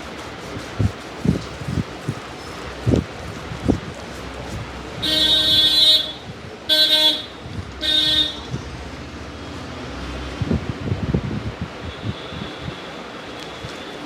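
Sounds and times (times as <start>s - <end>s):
vehicle horn honking: 5.0s - 8.6s.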